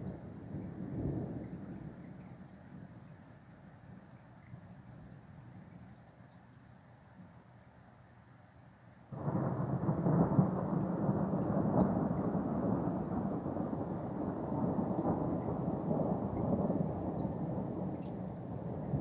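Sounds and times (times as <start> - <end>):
thunder crack and rumble: 9.2 - 19.0.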